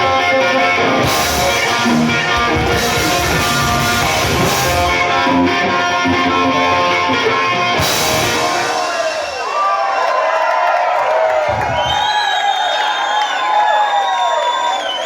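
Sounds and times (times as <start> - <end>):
electric guitar: 0.0 - 9.3
rock band playing: 0.0 - 9.6.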